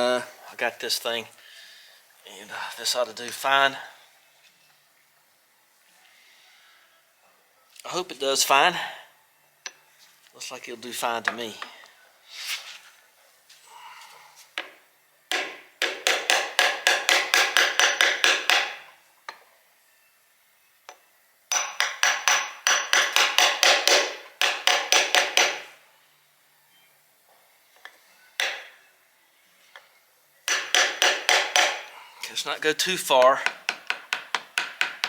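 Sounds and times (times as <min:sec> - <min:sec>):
hammer tapping metal: 0:15.3 - 0:18.9, 0:20.9 - 0:25.7, 0:28.4 - 0:28.8, 0:30.5 - 0:31.9, 0:33.2 - 0:35.0.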